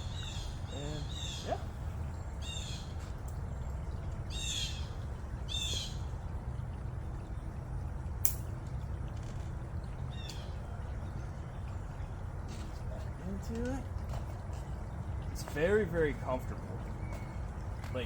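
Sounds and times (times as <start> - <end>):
steady low rumble: 0.0 - 18.0
sharp click: 8.2 - 8.5.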